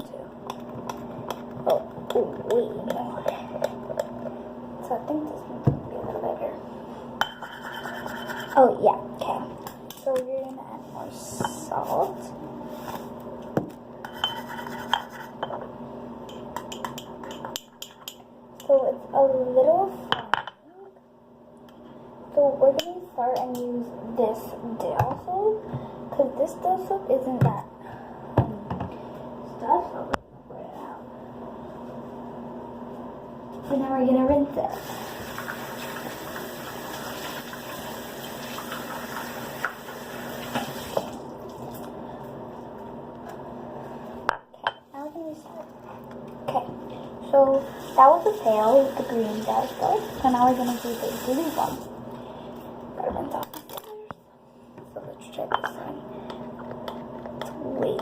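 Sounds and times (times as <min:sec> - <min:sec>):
steady low hum: 0:00.0 - 0:34.8
utensil clinking against a bowl: 0:14.0 - 0:15.7, 0:16.3 - 0:18.8
tap water running into sink: 0:34.8 - 0:41.7.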